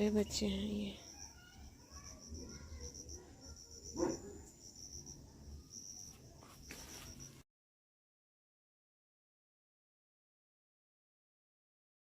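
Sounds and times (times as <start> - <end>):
crickets chirping: 0.0 - 7.4.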